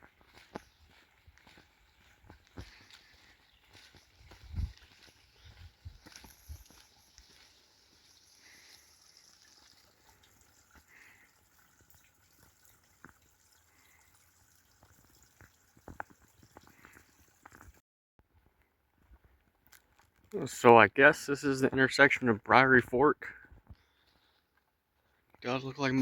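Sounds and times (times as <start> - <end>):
faint outdoor ambience: 0.2 - 17.7.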